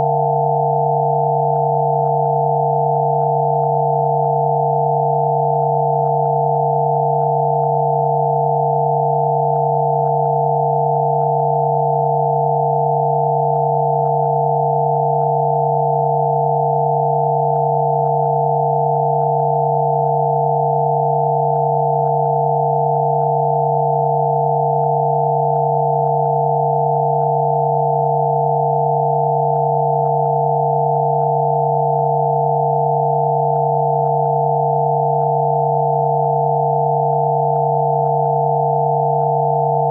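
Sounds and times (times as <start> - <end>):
steady high sine tones: 0.0 - 39.9.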